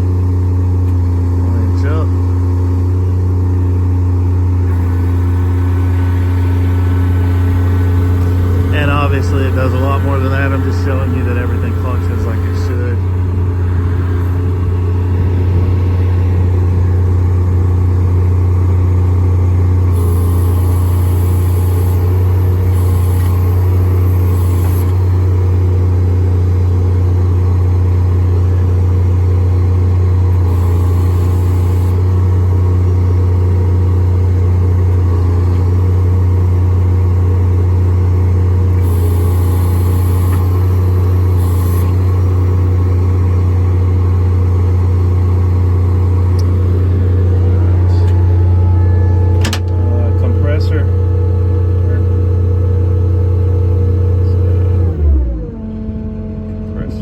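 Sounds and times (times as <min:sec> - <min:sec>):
truck engine droning: 0:00.0 - 0:57.0.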